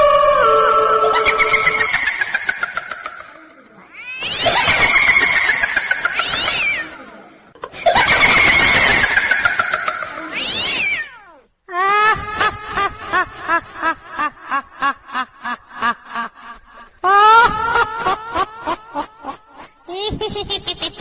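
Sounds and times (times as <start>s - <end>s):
ghost wail: 0.0s - 7.1s
cat-like wailing screeches: 3.8s - 7.1s, 10.0s - 11.4s.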